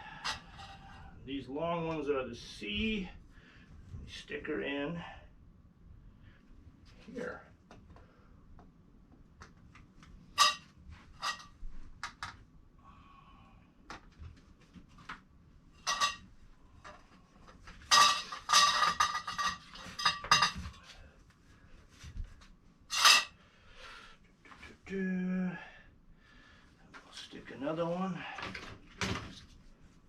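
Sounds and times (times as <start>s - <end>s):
metal poles clinking: 0.0s - 1.0s, 10.4s - 11.6s, 15.8s - 16.3s, 17.9s - 20.9s, 22.9s - 23.3s.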